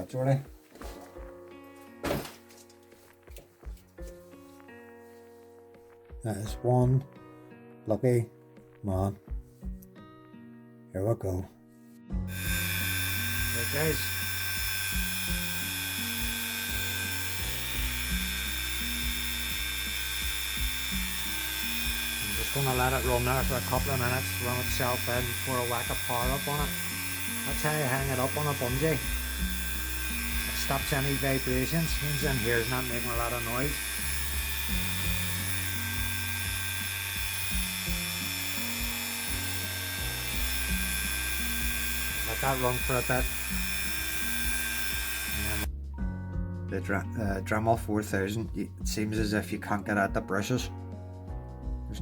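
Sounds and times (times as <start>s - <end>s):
background music: 0.0s - 52.0s
rotary tool whining: 12.3s - 45.7s.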